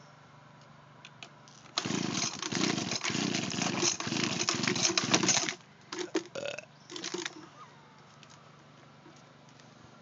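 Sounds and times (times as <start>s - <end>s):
leaf blower engine running unevenly: 1.7s - 6.0s.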